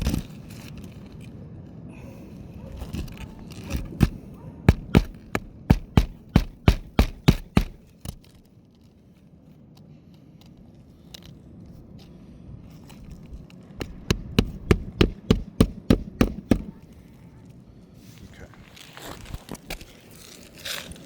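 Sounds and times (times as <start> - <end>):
hammer striking nails: 3.7 - 8.4, 13.8 - 16.8.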